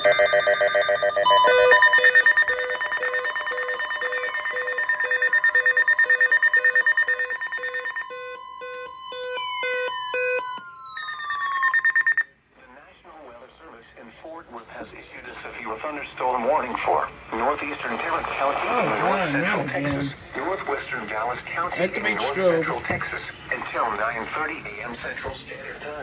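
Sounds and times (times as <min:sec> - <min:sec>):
high warning alarm tone: 0:00.0 - 0:12.3, 0:18.7 - 0:20.2
pulsing electronic beeps: 0:00.0 - 0:12.3.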